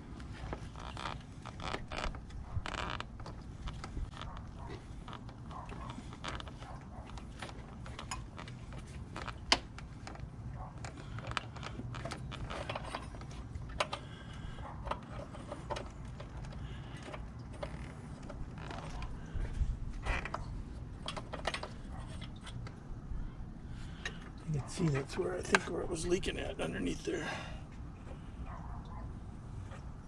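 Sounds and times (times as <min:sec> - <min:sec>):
hoses and clamps clicking: 0:00.2 - 0:22.8.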